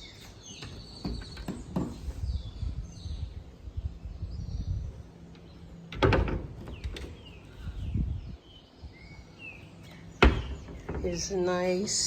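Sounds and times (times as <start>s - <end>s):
birds chirping faintly: 0.0s - 12.0s
door thumping open: 5.9s - 7.4s, 10.2s - 11.3s.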